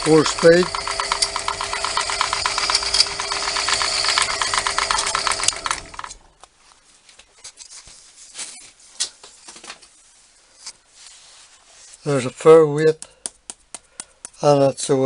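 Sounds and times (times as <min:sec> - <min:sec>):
fast ticking gearing: 0:00.0 - 0:06.3
milling machine humming: 0:00.0 - 0:06.3.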